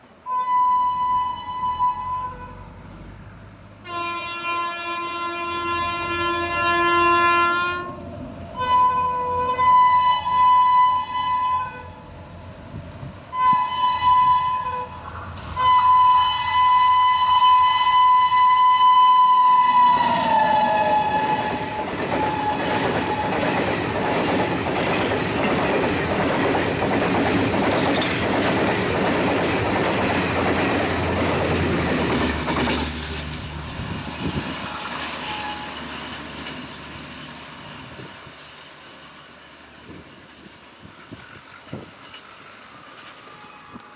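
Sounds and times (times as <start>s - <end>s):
locomotive horn blasts: 0.2s - 2.8s, 3.8s - 8.0s, 8.6s - 12.0s, 13.3s - 23.6s, 34.6s - 35.8s, 43.2s - 43.9s
train coaches rumbling and clacking: 1.1s - 43.9s.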